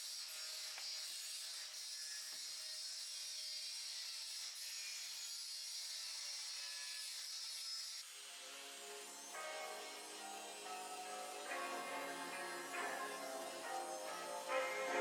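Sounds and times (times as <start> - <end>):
tool grinding metal: 0.0 - 15.0.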